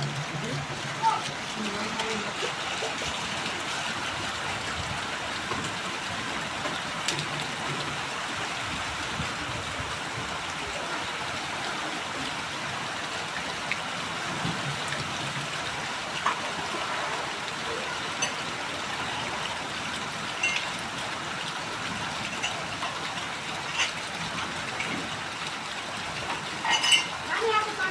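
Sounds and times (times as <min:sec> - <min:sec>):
heavy rain falling: 0:00.0 - 0:27.9.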